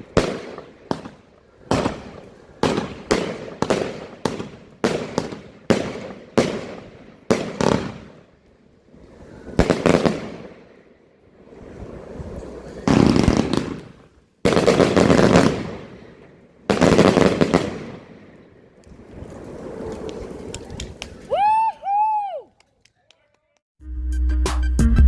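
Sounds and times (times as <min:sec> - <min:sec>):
fireworks cake firing shots: 0:00.0 - 0:08.4, 0:09.3 - 0:10.9, 0:11.5 - 0:21.2.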